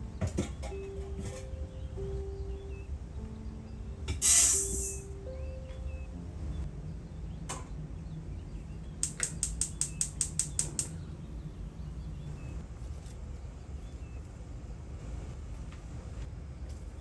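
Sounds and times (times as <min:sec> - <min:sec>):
low steady hum: 0:00.0 - 0:17.0
sharp clicks: 0:09.0 - 0:11.0.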